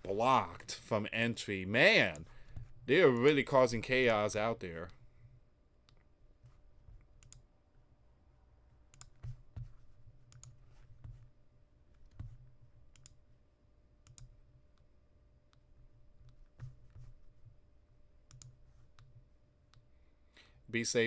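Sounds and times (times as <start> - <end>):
computer mouse clicking: 5.8 - 7.5, 8.9 - 11.3, 11.9 - 13.2, 14.0 - 14.9, 18.3 - 19.9.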